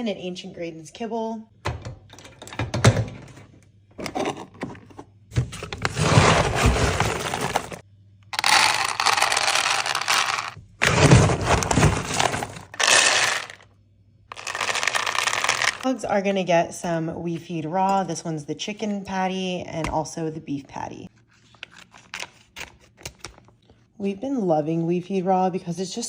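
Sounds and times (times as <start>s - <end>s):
dry kibble poured into bowls: 6.0s - 7.8s, 8.4s - 13.6s, 14.3s - 15.8s.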